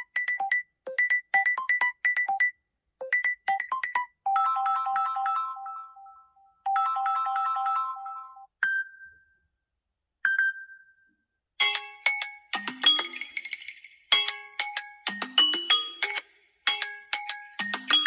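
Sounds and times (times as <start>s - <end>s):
bright melodic ringtone phrase: 3.9s - 8.5s
plucked electronic ringtone notes: 11.6s - 18.0s.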